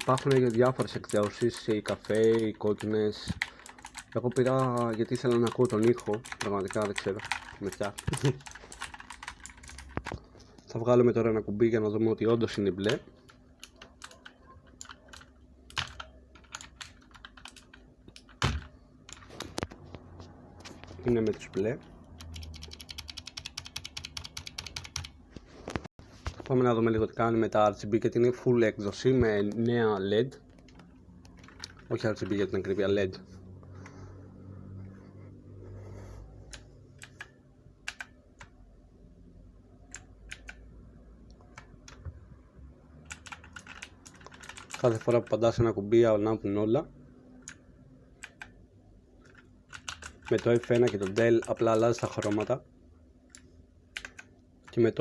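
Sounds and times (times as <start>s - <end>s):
keyboard clicks and knocks: 0.0s - 10.6s, 12.7s - 20.0s, 20.6s - 26.4s, 30.5s - 32.5s, 39.9s - 40.6s, 43.0s - 45.4s, 49.2s - 52.6s
clicky keyboard key presses: 22.2s - 25.1s, 36.5s - 38.6s, 39.9s - 40.6s, 43.1s - 45.2s, 49.2s - 51.5s, 54.0s - 54.3s.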